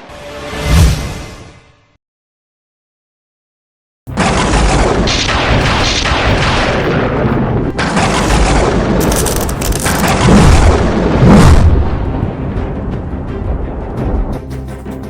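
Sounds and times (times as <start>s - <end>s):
booms and blast-like rumbles: 4.1s - 14.2s.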